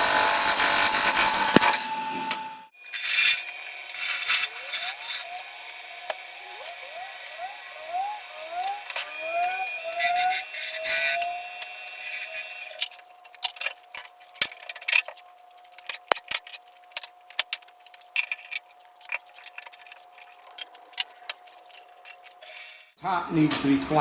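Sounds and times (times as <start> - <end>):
wood lathe whining: 0.0 - 12.8.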